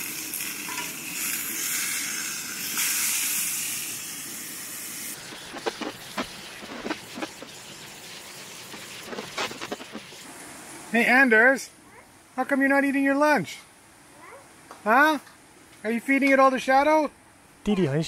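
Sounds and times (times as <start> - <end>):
running water stream: 5.1 - 11.4.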